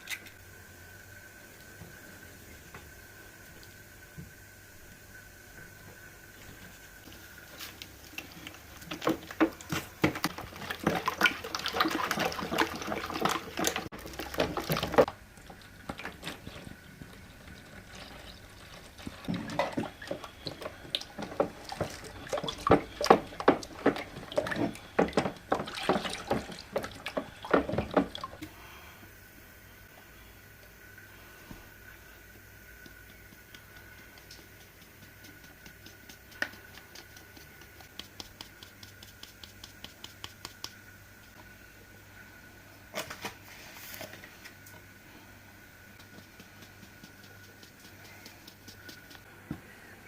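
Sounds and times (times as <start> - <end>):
liquid splashing and sloshing: 6.4 - 28.6.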